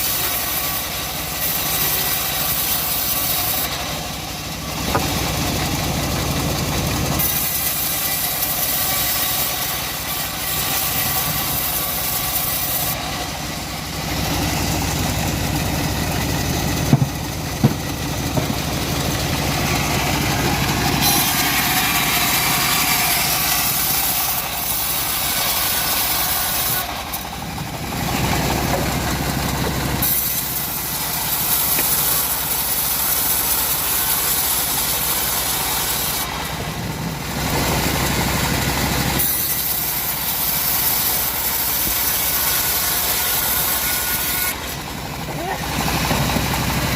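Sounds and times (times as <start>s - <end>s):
band sawmill sawing timber: 0.0s - 46.9s
sharp knocks: 16.8s - 19.0s.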